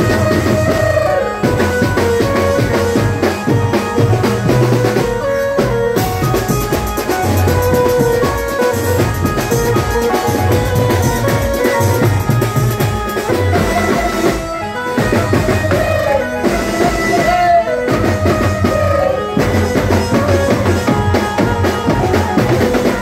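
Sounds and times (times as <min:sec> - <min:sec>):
drums keeping a dense beat: 0:00.0 - 0:23.0
live band music: 0:00.0 - 0:23.0.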